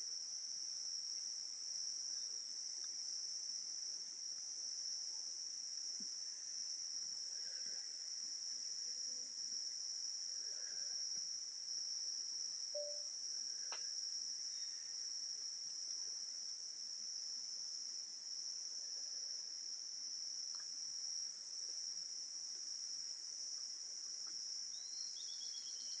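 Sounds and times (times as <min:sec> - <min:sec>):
crickets trilling: 0:05.7 - 0:15.8, 0:19.8 - 0:26.0.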